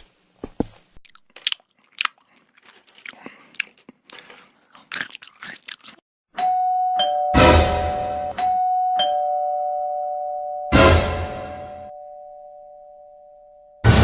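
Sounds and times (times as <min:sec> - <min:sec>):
crunching chewing: 0:01.0 - 0:06.0
two-tone doorbell chime: 0:06.4 - 0:13.8.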